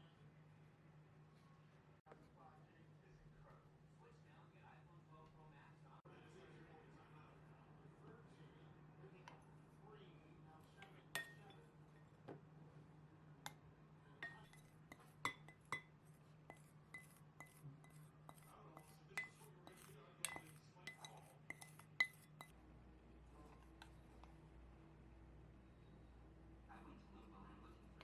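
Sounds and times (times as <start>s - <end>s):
spoon clinking against glass: 11.2s - 11.7s, 14.2s - 15.9s, 16.5s - 22.5s.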